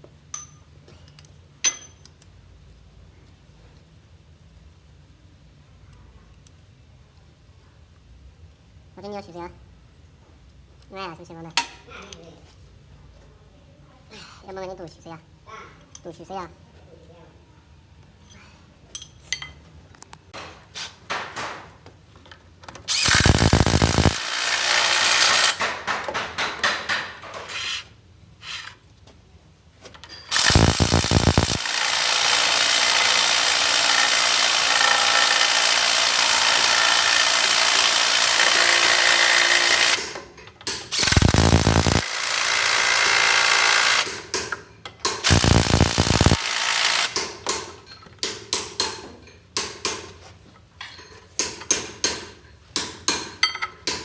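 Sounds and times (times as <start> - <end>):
power tool running: 22.9 - 25.6, 30.3 - 40.0, 40.9 - 44.1, 45.2 - 47.2.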